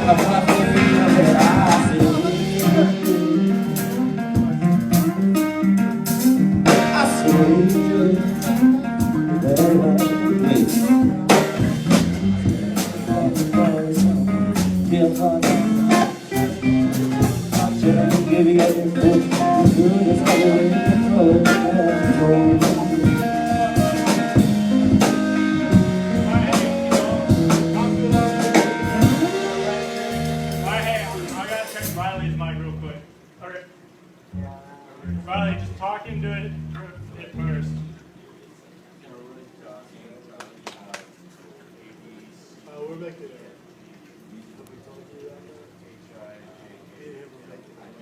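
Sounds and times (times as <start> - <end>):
drums keeping a steady beat: 0.0 - 32.2
electric guitar: 0.0 - 32.8.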